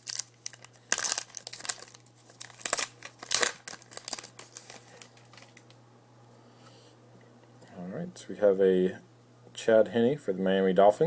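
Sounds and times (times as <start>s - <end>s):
wrapper tearing and crinkling: 0.0s - 5.8s.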